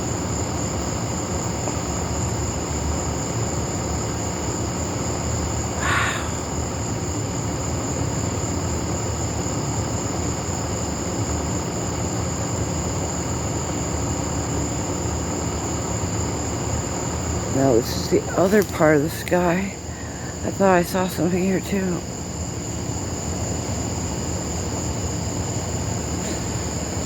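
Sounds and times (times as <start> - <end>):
high-pitched insect chorus: 0.0 - 27.0.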